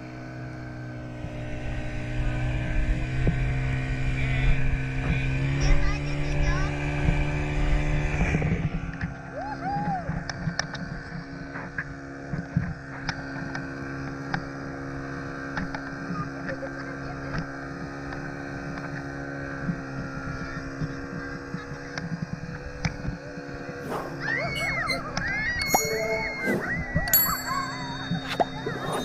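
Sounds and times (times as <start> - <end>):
speedboat engine running: 0.0 - 9.3.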